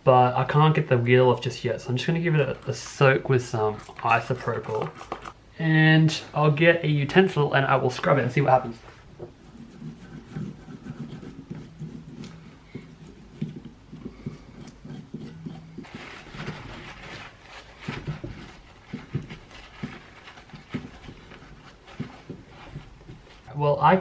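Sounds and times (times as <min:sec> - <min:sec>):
scrubbing: 0:01.8 - 0:05.4, 0:08.8 - 0:23.5.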